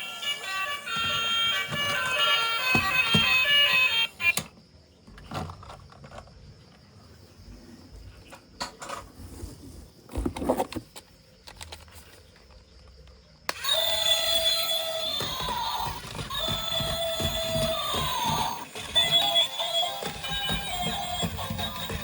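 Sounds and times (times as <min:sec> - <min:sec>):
plastic toys clicking and knocking: 0:00.8 - 0:06.4, 0:10.6 - 0:12.2, 0:13.5 - 0:22.0.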